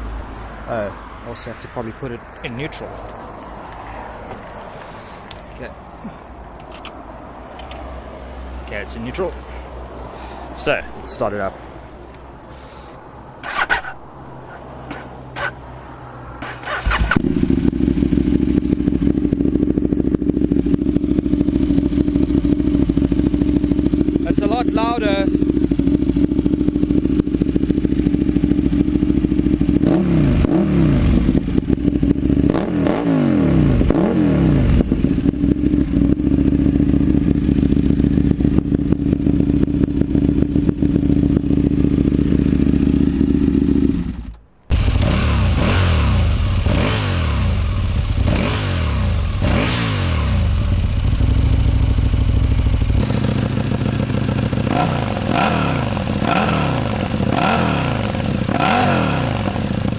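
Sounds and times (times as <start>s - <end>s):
motorcycle engine revving: 13.4s - 14.0s, 14.8s - 15.7s, 16.3s - 59.9s.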